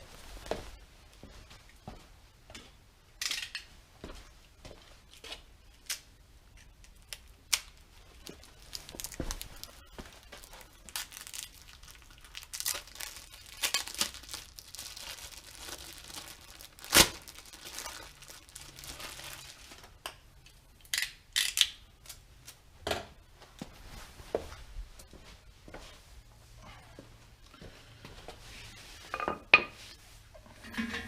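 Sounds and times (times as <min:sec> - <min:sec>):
packaging rustling and crinkling: 0:06.9 - 0:20.0.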